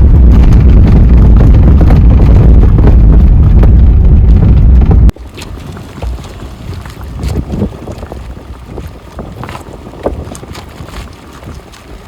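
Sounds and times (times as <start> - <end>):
car rumbling in motion: 0.0 - 5.3
wind buffeting microphone: 0.0 - 12.0.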